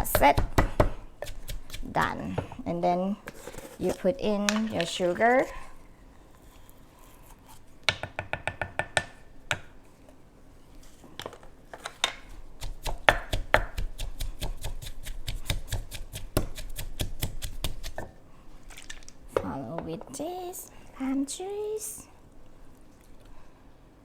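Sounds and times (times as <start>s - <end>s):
pestle pounding in a mortar: 0.0s - 2.5s, 12.6s - 18.1s.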